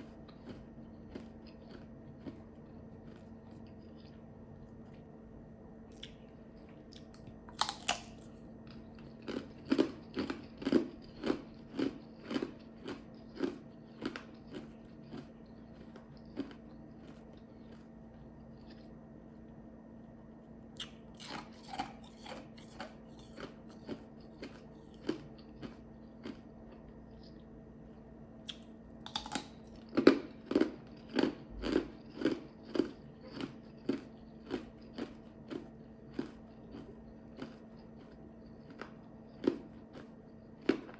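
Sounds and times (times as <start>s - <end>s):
ice chips crunching: 0.4s - 2.4s, 7.0s - 17.2s, 29.0s - 40.0s.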